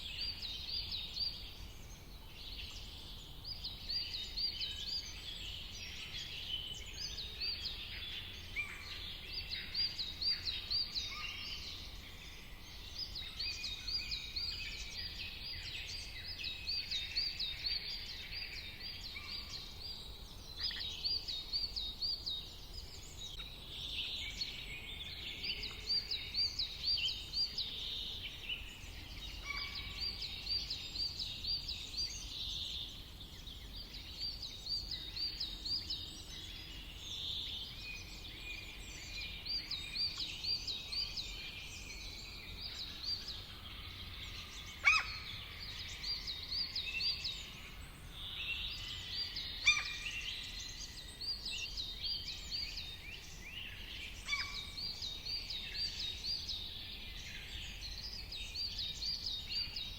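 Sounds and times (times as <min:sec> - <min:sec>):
birds chirping and calling: 0:38.1 - 0:47.8, 0:48.4 - 0:59.9.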